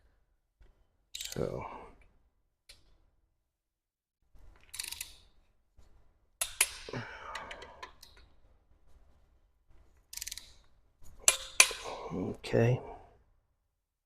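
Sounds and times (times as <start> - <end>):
torque wrench clicks: 4.7 - 5.2, 10.1 - 10.5.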